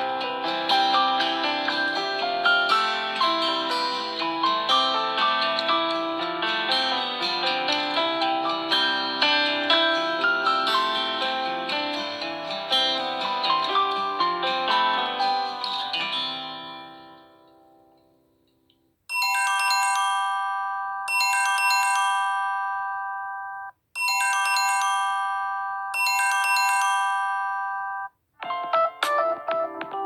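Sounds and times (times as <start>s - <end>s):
plucked-string ringtone melody: 0.0s - 17.6s, 19.1s - 30.0s
bell-like chiming ringtone: 0.4s - 11.2s, 19.1s - 28.2s.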